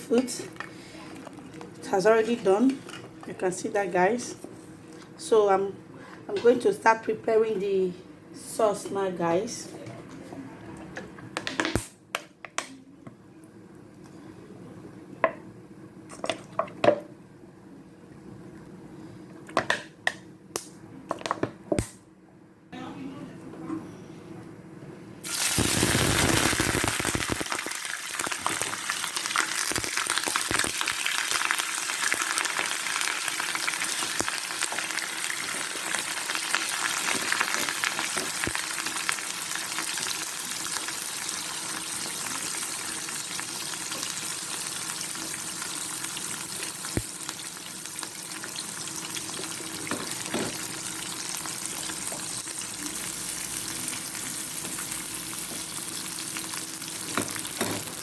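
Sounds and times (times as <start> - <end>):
food sizzling in a hot pan: 25.2 - 58.0.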